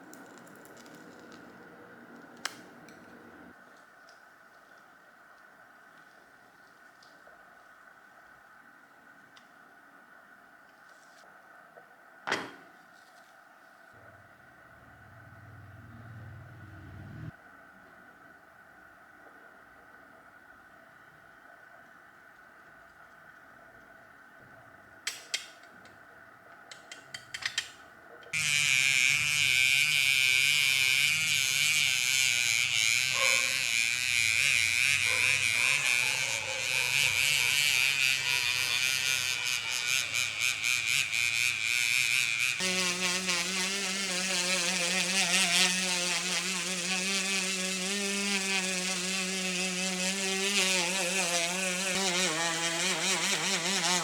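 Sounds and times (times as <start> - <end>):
electric power tool whining: 28.4 - 54.0.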